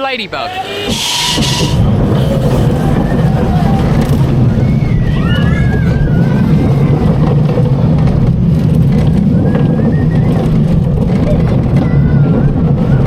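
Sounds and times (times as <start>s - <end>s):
roller coaster rumbling: 0.0s - 13.0s
wheel squeals: 0.4s - 13.0s.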